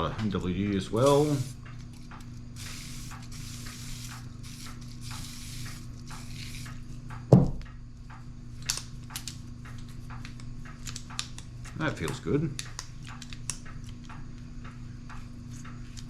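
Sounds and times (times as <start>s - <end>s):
aerosol can hissing: 1.0s - 1.6s, 2.6s - 6.7s
loud thump: 7.3s - 7.6s.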